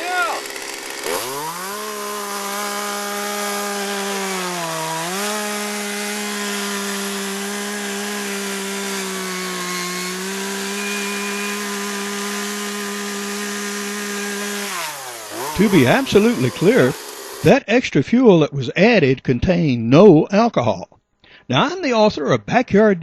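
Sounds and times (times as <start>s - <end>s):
chainsaw running at high revs: 0.0s - 17.5s.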